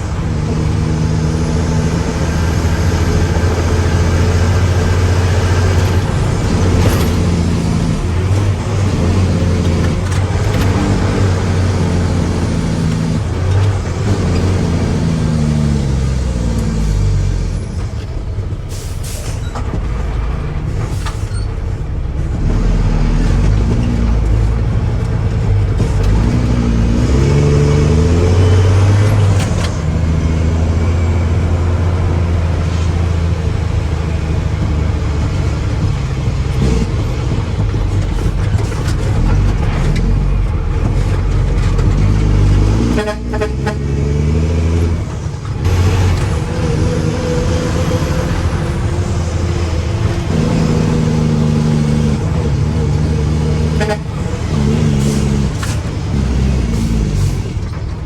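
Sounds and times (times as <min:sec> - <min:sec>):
truck diesel engine revving: 0:00.0 - 0:58.0.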